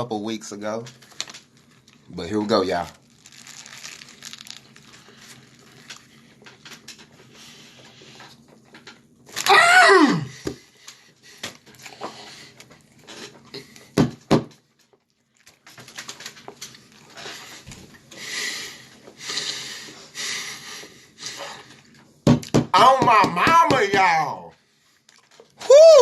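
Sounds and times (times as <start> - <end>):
wrapper rustling: 0.9 - 7.0, 9.2 - 9.5, 14.7 - 17.6
man's wordless exclamation: 22.8 - 24.6.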